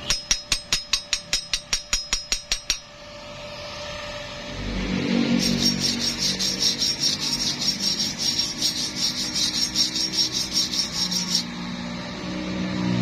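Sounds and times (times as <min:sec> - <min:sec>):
fast scraping strokes: 0:05.1 - 0:11.5.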